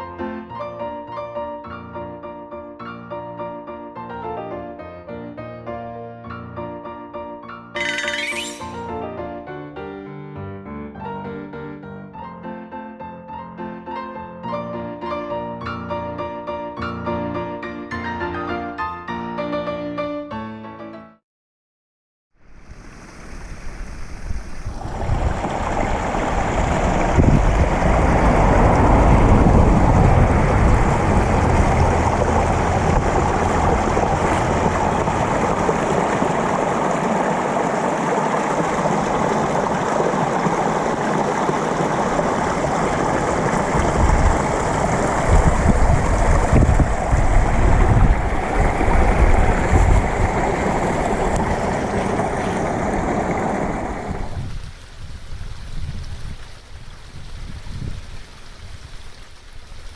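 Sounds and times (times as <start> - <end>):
wind rumbling on microphone: 22.5 - 59.9
stream water rushing: 24.8 - 28.4, 30.3 - 54.4.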